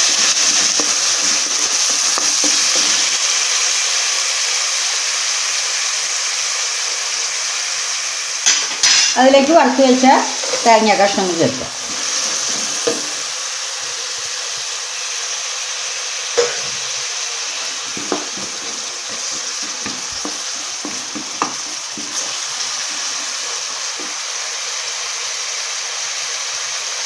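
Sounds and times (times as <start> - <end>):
food sizzling in oil: 0.0 - 27.0
spoon knocking against pan: 12.8 - 13.2, 16.4 - 16.8, 17.9 - 22.2.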